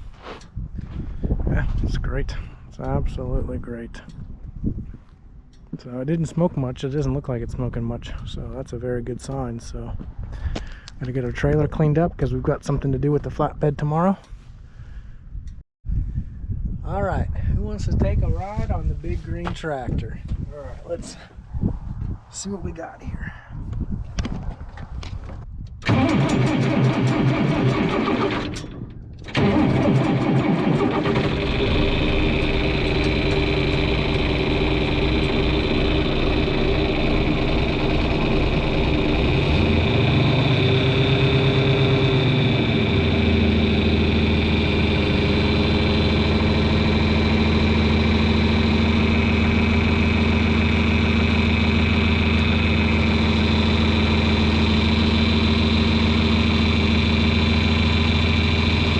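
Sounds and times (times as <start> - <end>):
diesel tractor engine running: 25.8 - 58.9
tractor engine starter cranking: 25.8 - 58.9.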